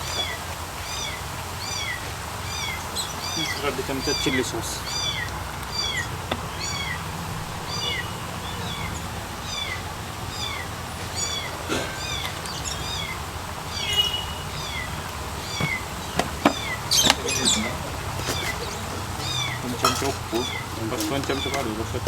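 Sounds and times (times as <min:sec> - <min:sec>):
small animal high-pitched calls: 0:00.0 - 0:21.6
faint knocks: 0:14.6 - 0:22.0.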